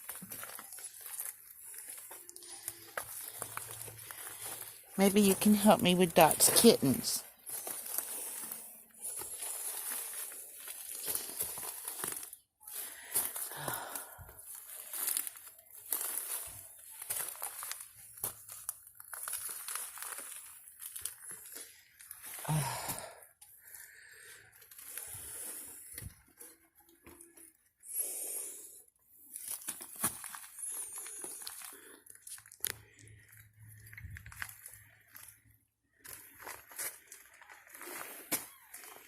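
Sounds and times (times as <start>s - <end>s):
boards cracking underfoot: 0.0s - 4.8s
footsteps crunching over debris: 0.0s - 23.8s, 29.3s - 39.0s.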